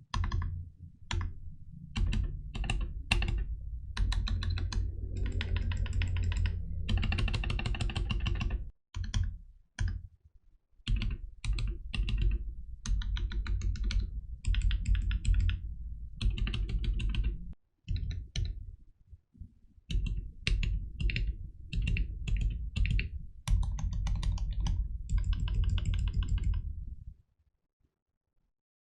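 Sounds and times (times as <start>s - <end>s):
mechanical keyboard typing: 0.0s - 0.5s, 2.0s - 10.0s, 10.9s - 15.6s, 16.2s - 18.6s, 19.9s - 26.7s.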